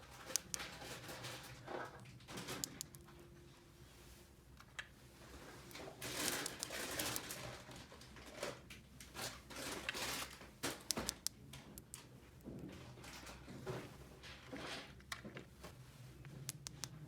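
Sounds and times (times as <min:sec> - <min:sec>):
sharp light plastic clicks: 0:02.4 - 0:03.1, 0:06.1 - 0:07.4, 0:10.7 - 0:12.1, 0:16.5 - 0:17.0
plastic packaging rustling: 0:05.9 - 0:10.9.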